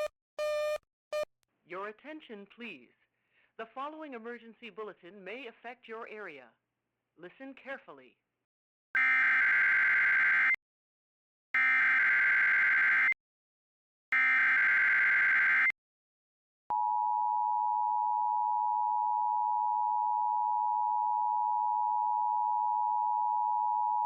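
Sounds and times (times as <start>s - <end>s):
steady warning alarm tone: 11.6s - 13.2s, 14.2s - 15.7s.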